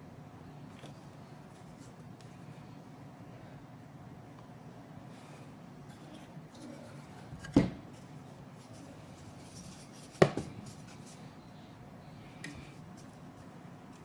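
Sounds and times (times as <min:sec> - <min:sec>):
faint handling and rubbing: 0:00.8 - 0:02.9, 0:05.2 - 0:14.0.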